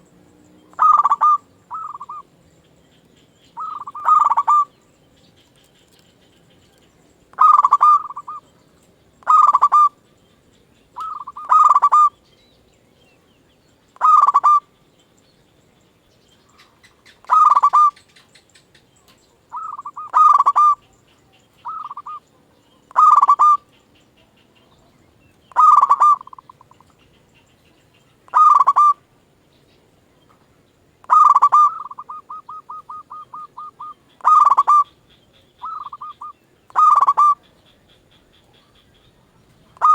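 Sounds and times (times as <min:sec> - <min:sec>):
dove cooing: 0:00.0 - 0:02.3, 0:03.6 - 0:04.8, 0:07.3 - 0:08.5, 0:09.2 - 0:10.0, 0:11.0 - 0:12.2, 0:14.0 - 0:14.7, 0:16.6 - 0:18.3, 0:19.5 - 0:24.8, 0:25.5 - 0:27.1, 0:28.1 - 0:29.0, 0:31.0 - 0:39.9.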